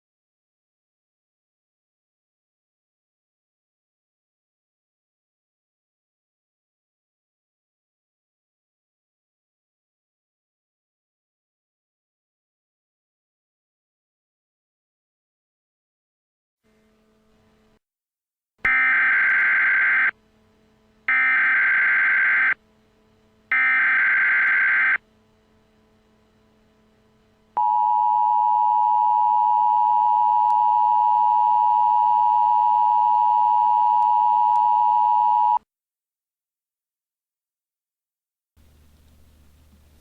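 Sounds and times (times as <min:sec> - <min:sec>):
two-tone attention signal: 0:27.6 - 0:35.6.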